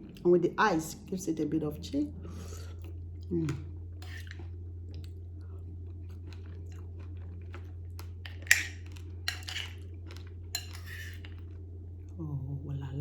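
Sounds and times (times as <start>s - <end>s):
person chewing crunchy food: 0.0s - 0.2s, 2.6s - 12.1s
steady low hum: 0.0s - 13.0s.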